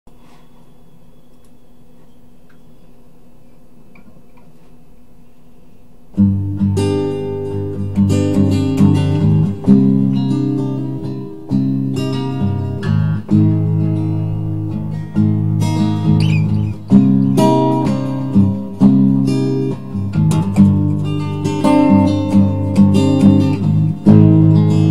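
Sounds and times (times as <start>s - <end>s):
acoustic guitar chords: 6.1s - 24.9s.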